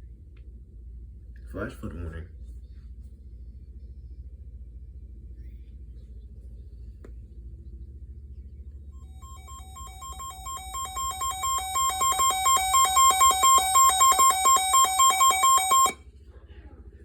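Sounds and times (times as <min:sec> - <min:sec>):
alternating high beeping tones: 0:09.0 - 0:16.0.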